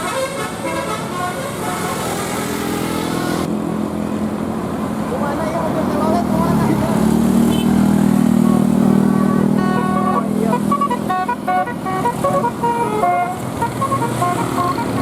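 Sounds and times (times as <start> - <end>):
musical air horn melody: 0.0 - 3.5, 9.1 - 15.0
low bus engine: 0.0 - 15.0.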